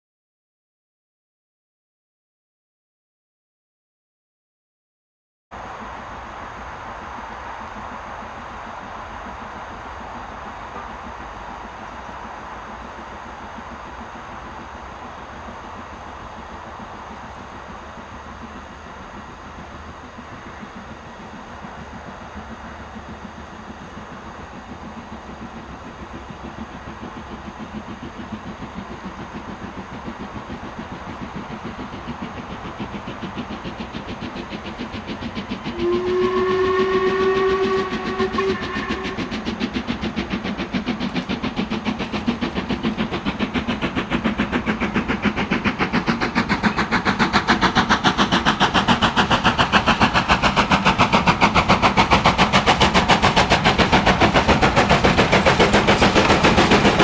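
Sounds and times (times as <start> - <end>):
steam locomotive exhaust beating: 5.6 - 57.0
steam locomotive whistle: 35.6 - 39.6.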